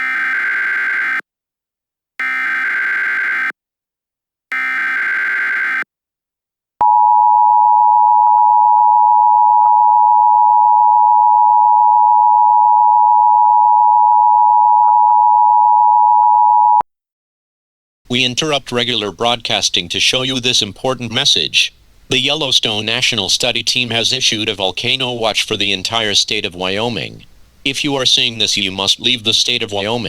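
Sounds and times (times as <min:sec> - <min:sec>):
harsh buzzy data bursts: 0:00.0 - 0:01.2, 0:02.2 - 0:03.5, 0:04.5 - 0:05.8
loud steady attention tone: 0:00.0 - 0:01.2, 0:02.2 - 0:03.5, 0:04.5 - 0:05.8.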